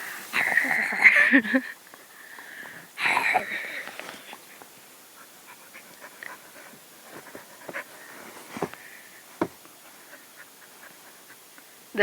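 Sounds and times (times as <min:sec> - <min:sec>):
dog panting: 0:04.2 - 0:08.7, 0:09.8 - 0:11.5.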